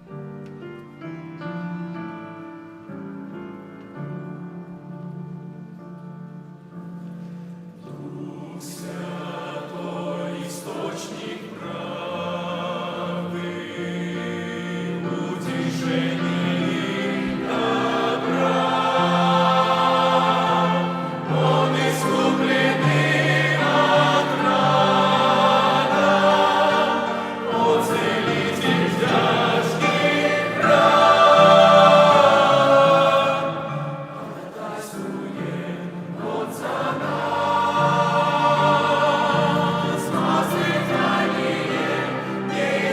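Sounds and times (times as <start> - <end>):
choir singing a hymn: 6.3 - 42.9
instrumental accompaniment: 14.8 - 42.9.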